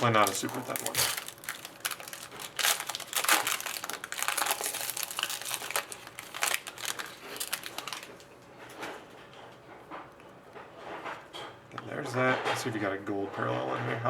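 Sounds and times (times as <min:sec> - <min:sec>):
plastic wrapping crinkling: 0:00.0 - 0:09.2.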